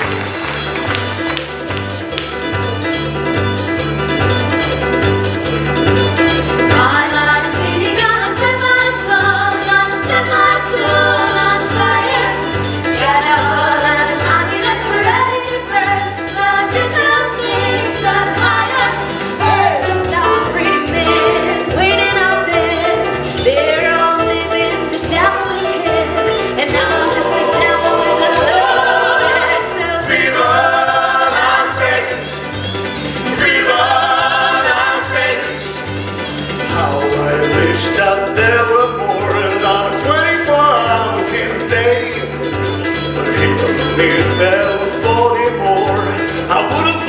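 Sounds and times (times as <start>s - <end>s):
voices singing: 6.8s - 36.0s, 36.7s - 42.3s
pulsing bass line: 26.0s - 34.2s.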